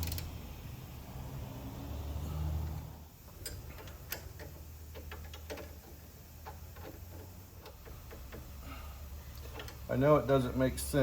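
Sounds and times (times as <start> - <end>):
metallic clicks of hand tools: 0.0 - 0.3.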